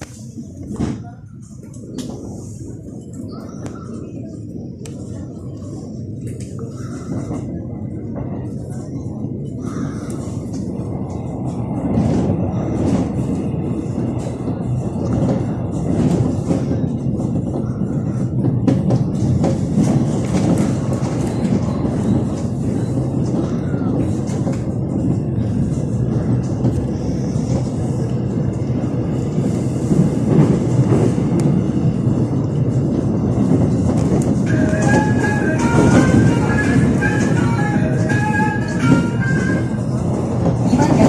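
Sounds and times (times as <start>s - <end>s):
clicks from train track: 0.0s - 2.4s, 4.8s - 7.5s, 18.2s - 28.3s, 33.5s - 41.0s
train wheels rumbling on rails: 0.0s - 41.0s.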